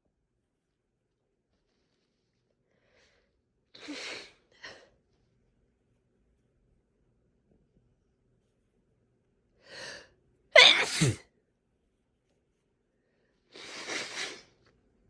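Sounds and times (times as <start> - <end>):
person sneezing: 10.6 - 11.2.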